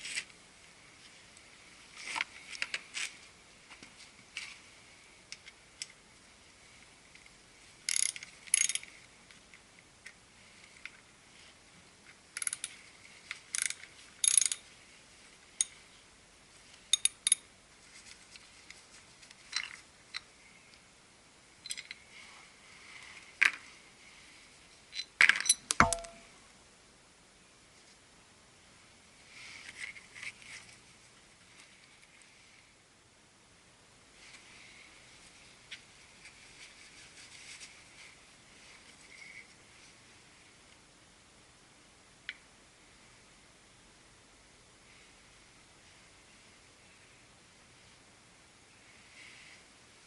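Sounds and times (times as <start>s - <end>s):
metal tools clicking and clinking: 13.5s - 14.6s, 16.9s - 17.4s, 24.9s - 26.2s
metal clatter with ring: 13.6s - 14.7s, 25.0s - 26.3s.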